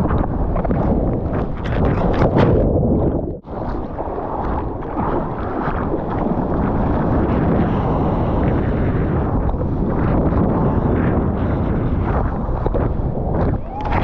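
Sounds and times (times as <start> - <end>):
rushing water: 0.0 - 14.0
wind buffeting microphone: 0.0 - 14.0.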